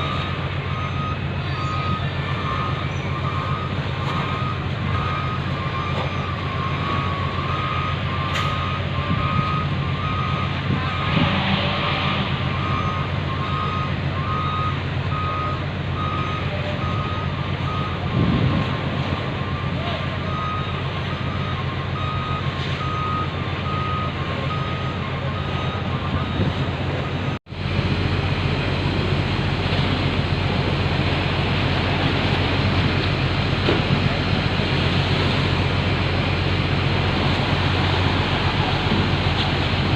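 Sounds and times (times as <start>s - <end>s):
reversing alarm beeping: 0.0s - 27.4s
ship engines rumbling: 0.0s - 39.9s.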